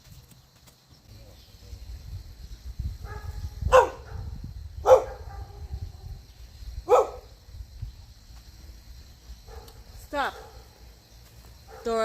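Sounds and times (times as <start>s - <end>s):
dog barking: 3.0s - 6.0s, 6.9s - 7.3s, 9.5s - 10.7s, 11.7s - 12.0s.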